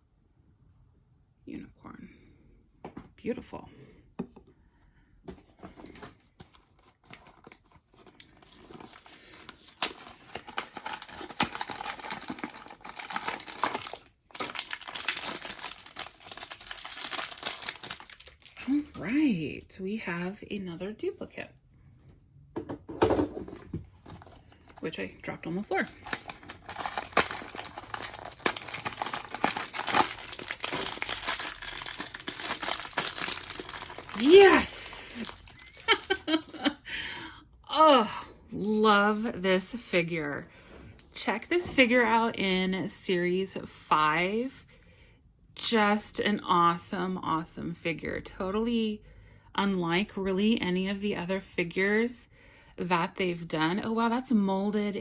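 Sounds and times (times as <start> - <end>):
foil pouch crinkling and ripping: 6.7 - 19.0, 25.7 - 36.6
cardboard box tearing: 7.1 - 15.3, 25.8 - 34.6.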